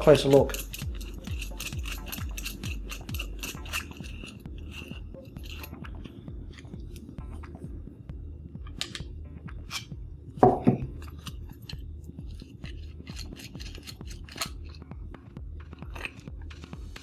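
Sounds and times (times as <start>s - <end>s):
low steady hum: 0.0s - 17.0s
clicks and scrapes of handled parts: 0.2s - 7.1s, 8.6s - 10.0s, 10.9s - 14.9s, 15.6s - 17.0s.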